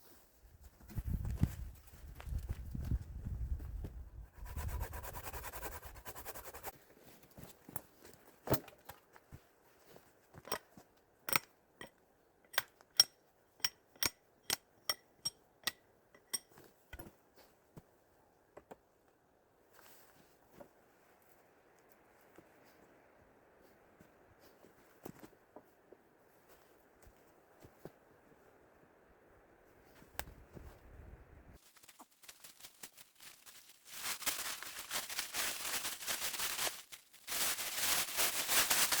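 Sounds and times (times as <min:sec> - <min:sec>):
rustling: 0:19.6 - 0:28.6, 0:29.6 - 0:39.0.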